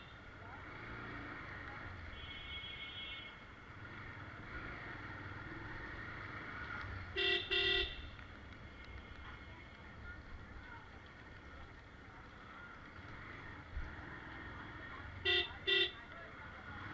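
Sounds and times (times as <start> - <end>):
street noise: 0.0 - 16.9
vehicle horn toots: 2.2 - 3.3, 7.2 - 8.0, 15.2 - 16.0.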